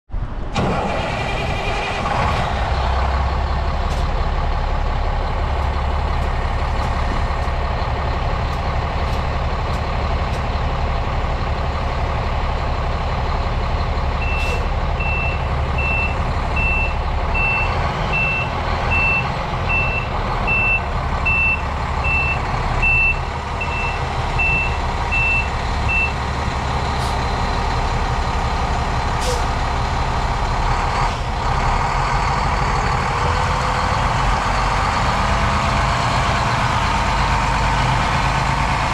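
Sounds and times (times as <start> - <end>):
diesel truck engine running: 0.4 - 38.9
reverse alarm beeping: 14.2 - 26.2.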